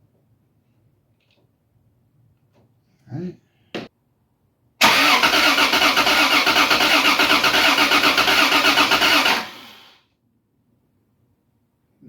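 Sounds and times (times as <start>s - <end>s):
engine cranking on starter: 4.8s - 10.0s.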